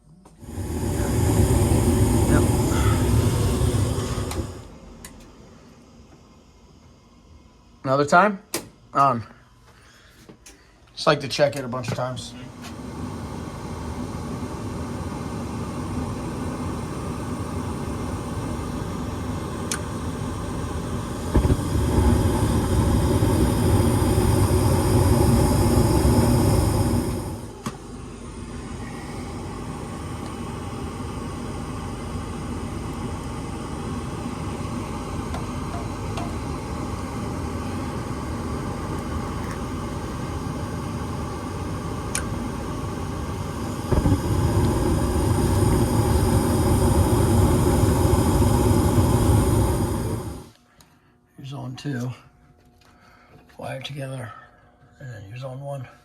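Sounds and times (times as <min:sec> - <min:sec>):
furnace motor hum: 0:00.0 - 0:55.5
furnace rushing noise: 0:00.4 - 0:04.8.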